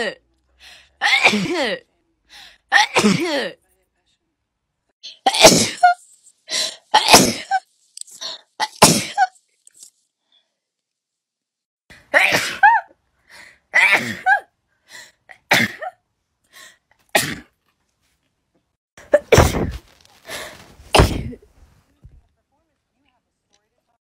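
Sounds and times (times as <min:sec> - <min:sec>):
person sneezing: 0:05.2 - 0:06.0, 0:06.6 - 0:07.6, 0:08.6 - 0:09.3, 0:19.1 - 0:21.5.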